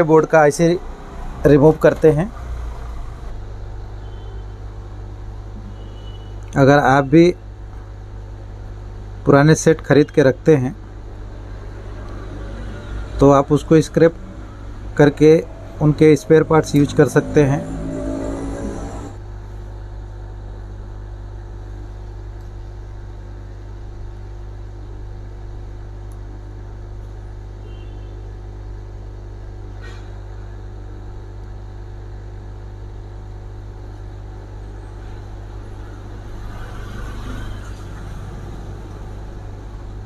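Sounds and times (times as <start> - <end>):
hot air station humming: 0.0 - 6.5, 10.4 - 20.5, 33.9 - 40.0.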